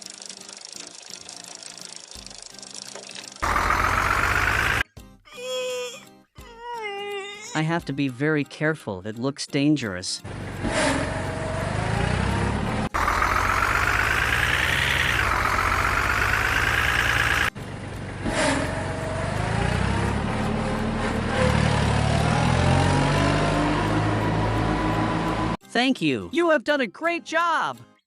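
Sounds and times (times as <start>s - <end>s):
heavy vehicle engine revving: 3.4s - 4.8s, 10.3s - 25.6s.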